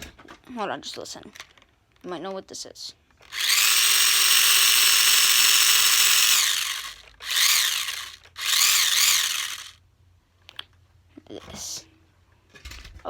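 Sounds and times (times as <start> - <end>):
remote-control car motor whine: 3.3 - 9.8.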